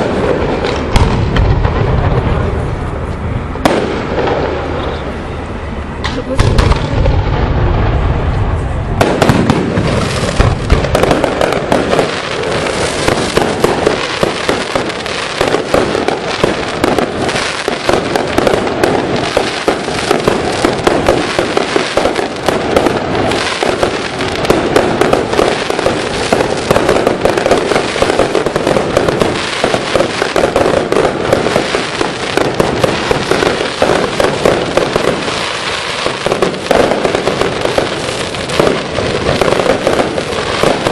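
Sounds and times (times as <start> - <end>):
deep firework boom: 0.0 - 2.9, 3.6 - 5.0, 6.2 - 35.3
rapid firework bangs and crackling: 0.0 - 40.9.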